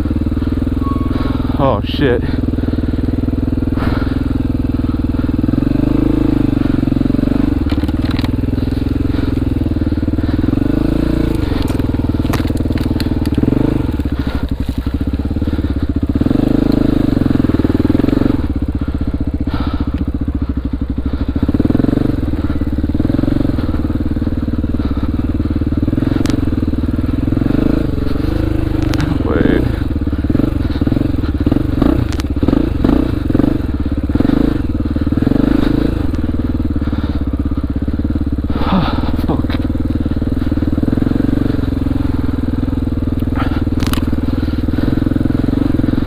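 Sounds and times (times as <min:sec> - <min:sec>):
motorcycle engine revving: 0:00.0 - 0:46.0
sharp clicks and knocks: 0:07.6 - 0:08.4.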